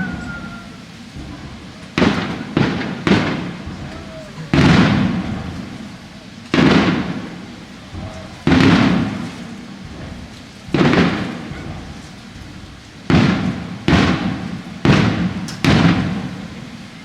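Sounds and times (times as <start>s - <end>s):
fireworks booming: 0.0s - 17.0s.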